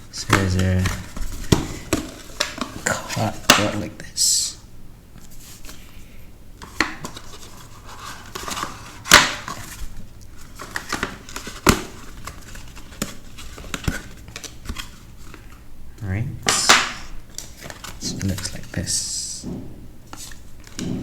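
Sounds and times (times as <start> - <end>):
cardboard and cards rustling: 0.0 - 4.0, 5.2 - 15.7, 16.4 - 21.0
sharp knocks: 19.4 - 19.9, 20.8 - 21.0.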